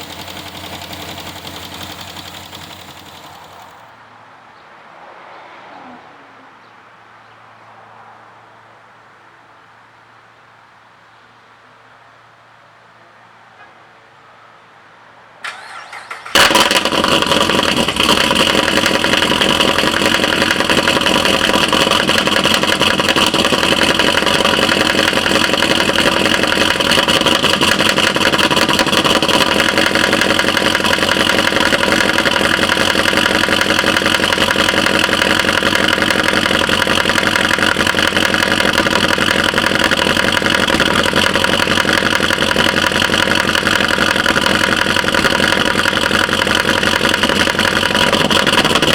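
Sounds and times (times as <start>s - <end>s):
engine cranking and starting: 0.0s - 3.9s, 15.4s - 48.9s
engine running with fast ticking: 0.0s - 4.0s, 15.5s - 48.9s.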